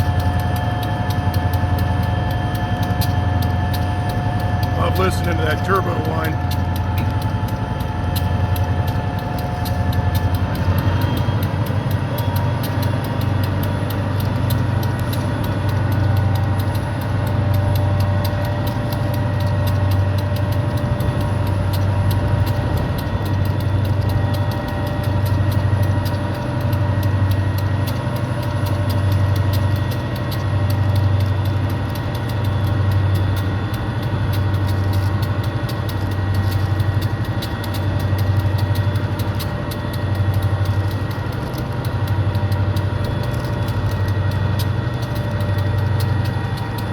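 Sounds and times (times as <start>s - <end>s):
diesel engine drone: 0.0s - 46.9s
turbocharger whine: 0.0s - 46.9s.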